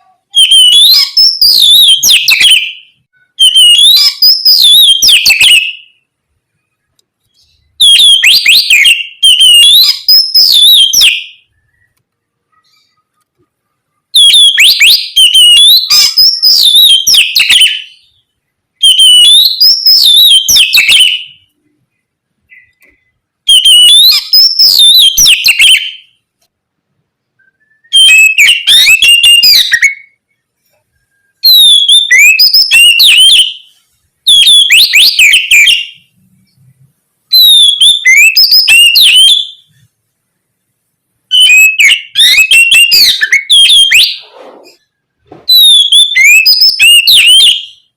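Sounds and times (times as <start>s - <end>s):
magpie-robin singing whistled phrases: 0.0s - 6.0s, 7.3s - 12.0s, 14.1s - 21.6s, 22.5s - 26.2s, 27.4s - 30.2s, 31.0s - 36.2s, 37.3s - 39.7s, 41.3s - 44.3s, 45.5s - 47.9s.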